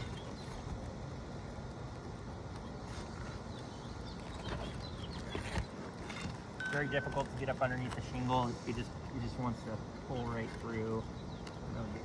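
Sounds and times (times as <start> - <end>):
pry bar scraping under shingles: 0.0 - 11.6
steady background noise: 0.0 - 12.0.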